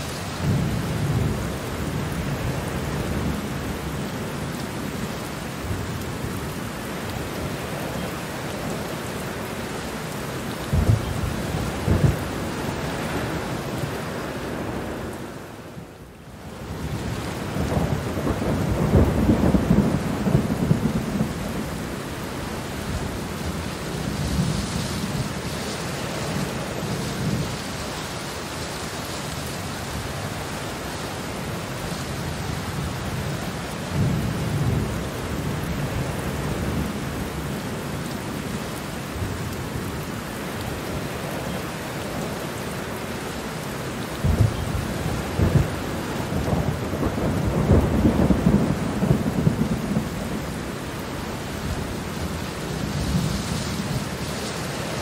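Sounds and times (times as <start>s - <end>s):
steady rain: 0.0s - 55.0s
thunder rumbling: 10.6s - 15.1s, 16.8s - 22.0s, 44.2s - 51.0s.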